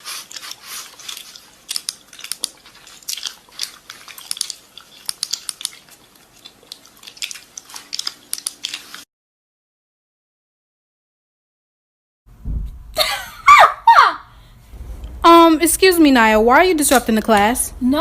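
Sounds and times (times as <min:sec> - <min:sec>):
person chewing crunchy food: 0:00.0 - 0:09.1.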